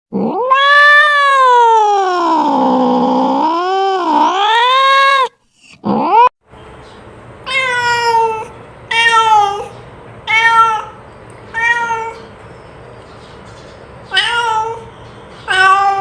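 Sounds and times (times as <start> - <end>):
cat meowing: 0.2 - 5.3, 7.5 - 12.3, 15.5 - 16.0.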